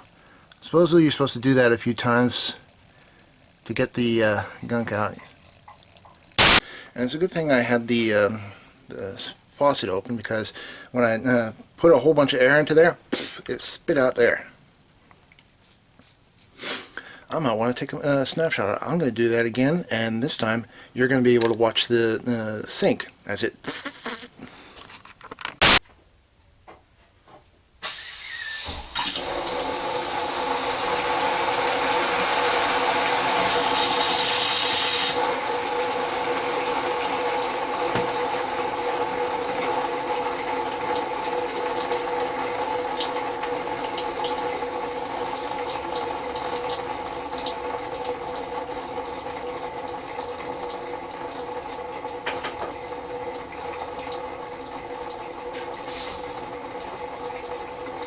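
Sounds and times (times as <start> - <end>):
water rushing from faucet: 0.0 - 6.6, 27.8 - 58.0
air hiss: 6.4 - 6.8, 27.8 - 29.3, 33.4 - 35.3, 55.9 - 56.4.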